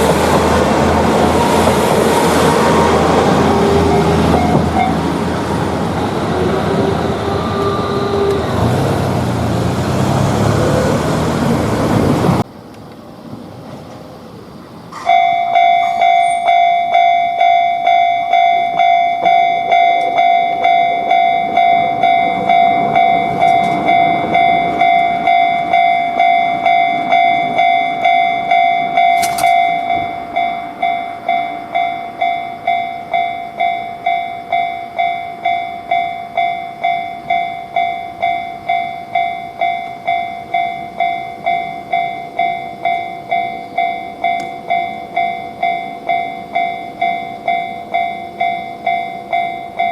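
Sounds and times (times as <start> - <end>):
train rumble: 0.0 - 49.9
level-crossing bell ringing: 15.1 - 49.9.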